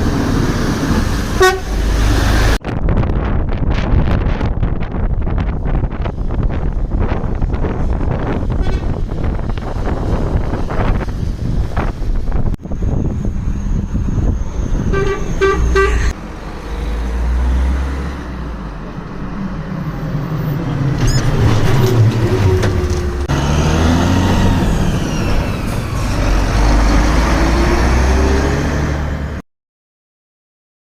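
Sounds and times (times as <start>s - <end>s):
road traffic: 0.0s - 29.4s
truck engines rumbling: 0.0s - 29.4s
truck horn toots: 1.4s - 2.0s, 8.6s - 9.0s, 14.9s - 16.1s
truck driving past: 12.7s - 29.4s.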